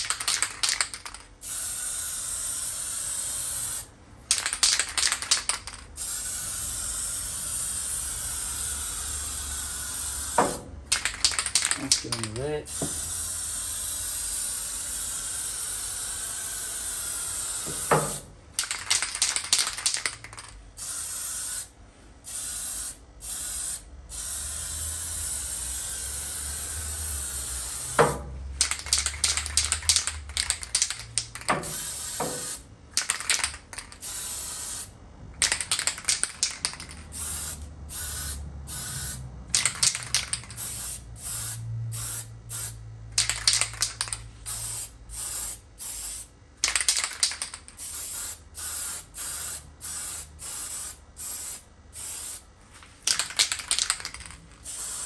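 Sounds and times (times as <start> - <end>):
spray paint can hissing: 0.0 - 52.4, 53.0 - 55.0.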